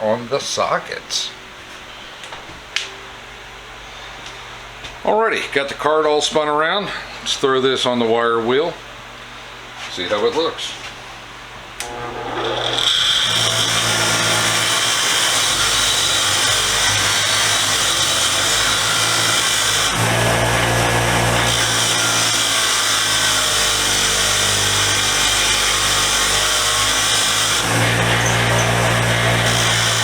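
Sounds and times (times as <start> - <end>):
power wire wheel spinning: 11.8 - 30.0.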